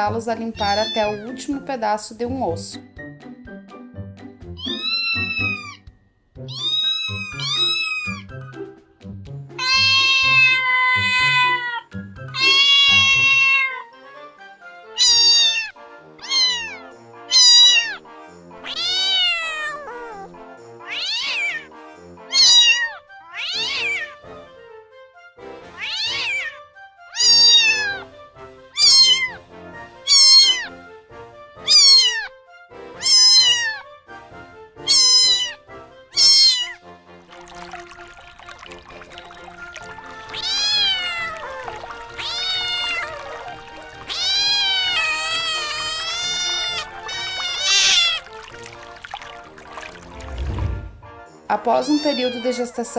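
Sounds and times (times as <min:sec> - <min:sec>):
soft background music: 0:00.0 - 0:52.9
cat meowing: 0:00.6 - 0:01.4, 0:04.6 - 0:08.3, 0:09.6 - 0:14.0, 0:15.0 - 0:18.0, 0:18.6 - 0:21.7, 0:22.3 - 0:24.2, 0:25.8 - 0:28.1, 0:28.8 - 0:29.4, 0:30.1 - 0:30.8, 0:31.6 - 0:32.3, 0:32.9 - 0:33.9, 0:34.8 - 0:36.8, 0:39.3 - 0:50.0, 0:51.8 - 0:52.8.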